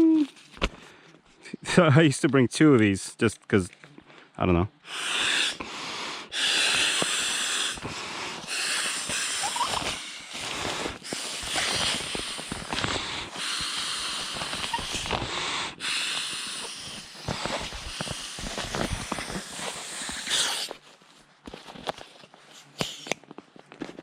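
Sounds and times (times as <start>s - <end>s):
person blowing breaths into valve: 4.8s - 20.8s.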